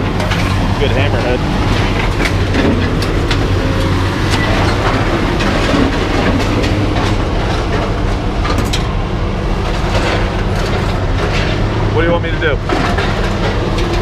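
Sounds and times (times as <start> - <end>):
scrap metal clanking: 0.0 - 9.0
engine running: 0.0 - 14.0.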